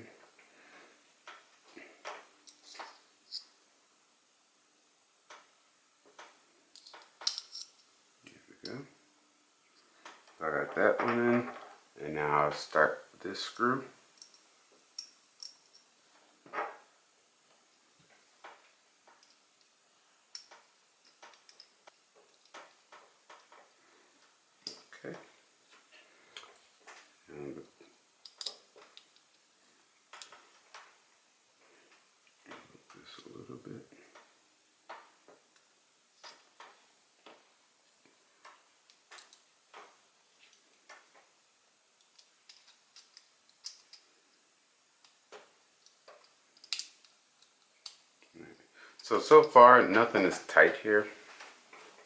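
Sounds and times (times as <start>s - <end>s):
small metal clicks: 6.2s - 7.9s, 20.3s - 23.6s, 28.2s - 29.4s, 30.1s - 30.9s, 42.0s - 44.1s, 45.0s - 48.3s.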